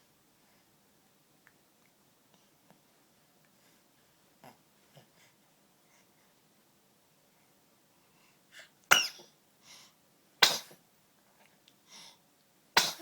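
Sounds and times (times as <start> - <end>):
baby breathing softly: 3.5 - 6.4, 7.4 - 8.8, 9.6 - 10.0, 11.8 - 12.2
baby sneezing: 8.9 - 9.3, 10.4 - 10.8, 12.8 - 13.0.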